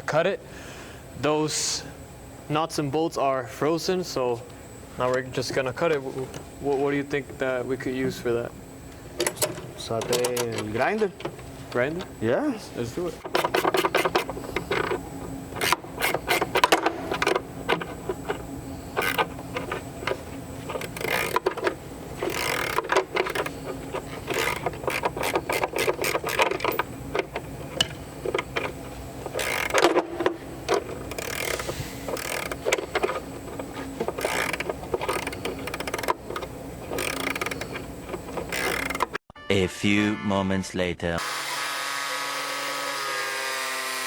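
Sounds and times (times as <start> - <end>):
angle grinder cutting steel: 41.2 - 44.0.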